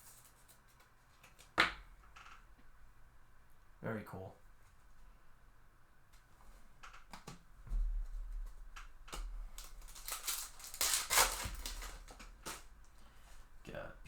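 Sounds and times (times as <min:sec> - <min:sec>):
foil wrapper crinkling as torn: 0:09.5 - 0:12.7.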